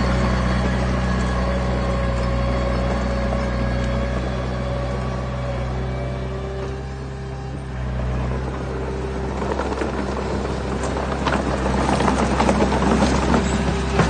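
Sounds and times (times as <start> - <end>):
diesel engine running: 0.0 - 14.0
stones rattling and tumbling: 8.3 - 14.0.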